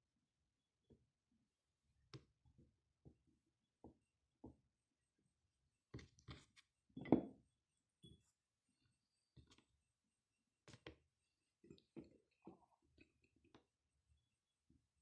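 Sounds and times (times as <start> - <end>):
soft knocks in a jar: 7.0 - 7.4.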